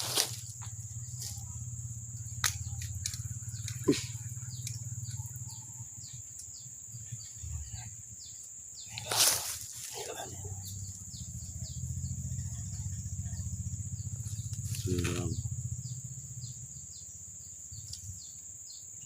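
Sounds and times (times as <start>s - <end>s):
birds chirping: 0.0s - 19.0s.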